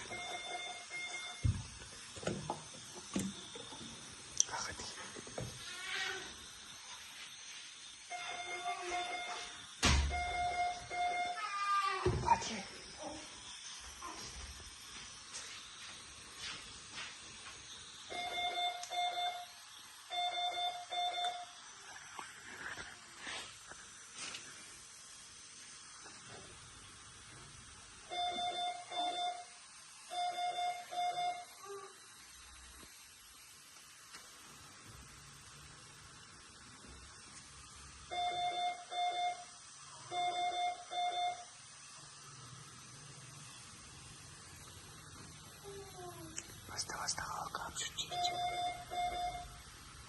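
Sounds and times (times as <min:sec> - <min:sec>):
medical alarm beeps: 0:00.0 - 0:01.7, 0:08.1 - 0:11.4, 0:18.1 - 0:21.6, 0:28.0 - 0:31.6, 0:38.1 - 0:41.6, 0:48.0 - 0:49.6.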